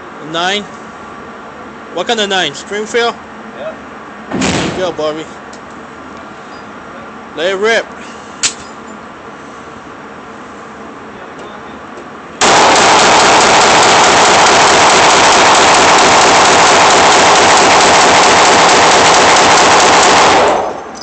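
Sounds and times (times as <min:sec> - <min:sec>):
rapid handgun fire: 0:12.4 - 0:20.8.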